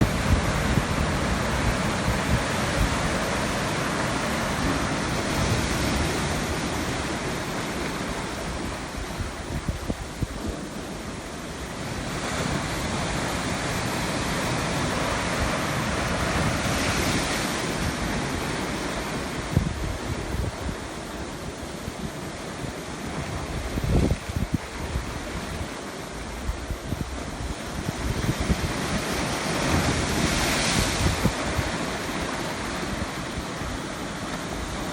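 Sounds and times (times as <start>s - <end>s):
ocean waves crashing: 0.0s - 34.9s
wind on microphone: 0.0s - 34.9s.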